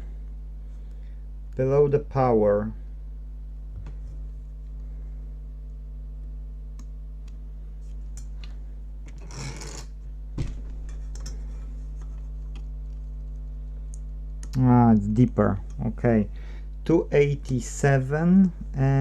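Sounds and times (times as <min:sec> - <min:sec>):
low electrical hum: 0:00.0 - 0:19.0
tool scraping: 0:09.1 - 0:12.4
small tools clicking and tapping: 0:10.8 - 0:11.4.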